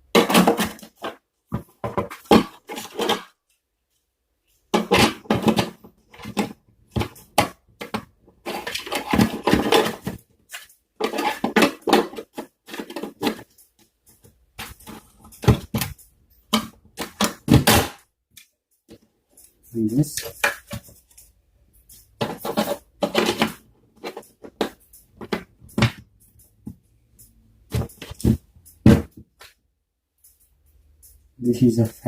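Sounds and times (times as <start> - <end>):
plastic parts clattering and scraping: 0.1 - 3.6, 4.6 - 18.0, 20.1 - 21.3, 21.9 - 26.0.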